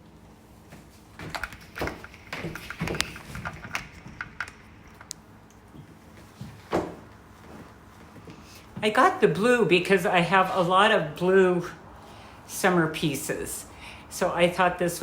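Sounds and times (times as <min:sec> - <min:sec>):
coat rustling: 0:05.9 - 0:08.9.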